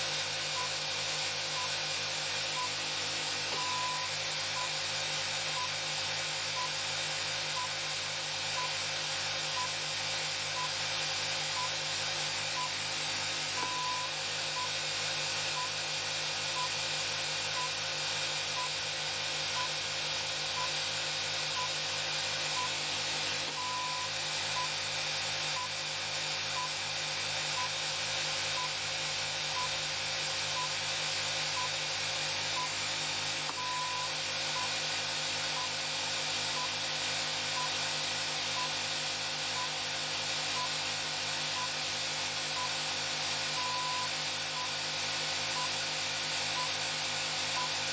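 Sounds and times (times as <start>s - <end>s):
electrical hum and hiss: 0.0s - 24.8s, 25.4s - 47.9s
longer electronic beep: 9.6s - 9.8s, 13.6s - 14.8s, 23.6s - 24.7s, 33.6s - 34.7s, 43.6s - 44.7s.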